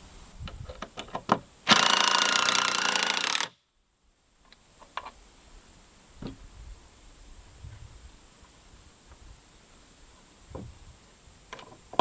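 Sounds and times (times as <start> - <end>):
impact driver hammering screw: 1.7 - 3.6.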